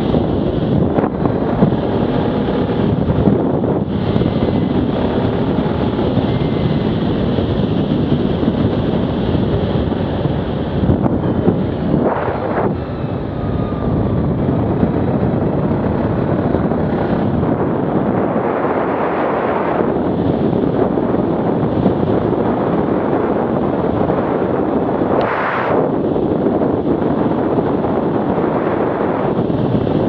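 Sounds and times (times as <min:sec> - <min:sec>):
atv engine running: 0:00.0 - 0:18.5
wind rushing over microphone: 0:00.0 - 0:30.0.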